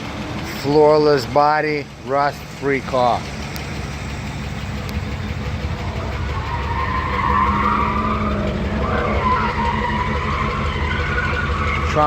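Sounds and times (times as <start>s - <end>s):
car engine idling: 0.0s - 12.0s
wavering high whine: 3.2s - 12.0s.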